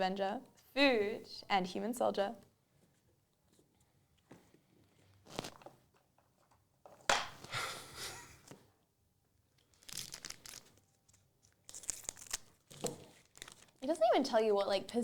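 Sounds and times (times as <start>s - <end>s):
foil wrapper tearing and crinkling: 5.2s - 5.6s, 9.6s - 13.8s.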